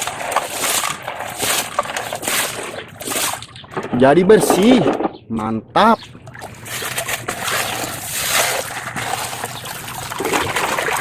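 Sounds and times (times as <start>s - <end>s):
running water trickling and splashing: 6.2s - 11.0s.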